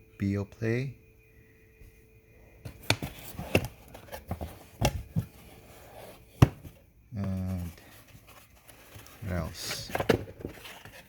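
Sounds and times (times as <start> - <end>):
packaging rustling: 7.2 - 11.0.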